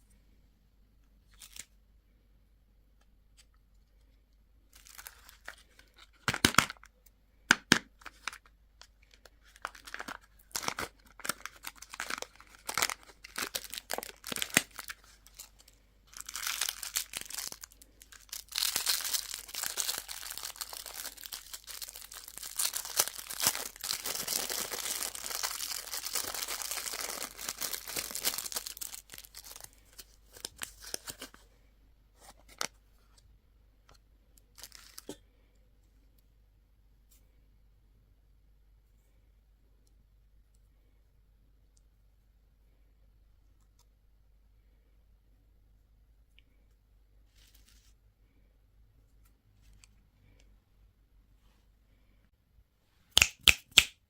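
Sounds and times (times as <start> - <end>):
plastic wrappers crinkling: 4.7 - 6.9, 8.0 - 31.4, 34.5 - 35.2.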